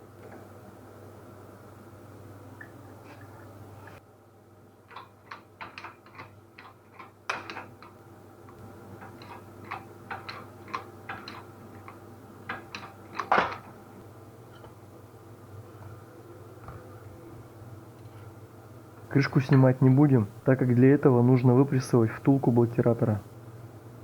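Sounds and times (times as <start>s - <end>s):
hand tools clicking on metal: 4.9s - 8.0s, 9.0s - 13.7s.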